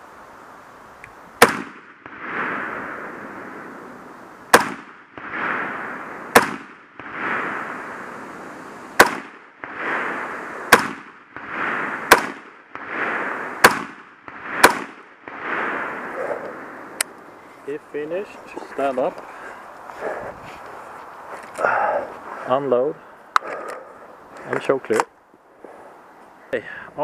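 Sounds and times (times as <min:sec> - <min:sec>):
rifle shots with rolling echo: 0:01.4 - 0:17.0.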